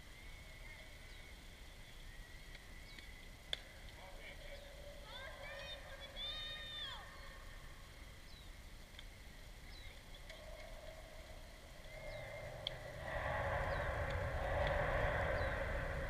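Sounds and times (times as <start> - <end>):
wash of noise with low rumble: 0.0 - 16.0
high falling chirps: 9.2 - 16.0.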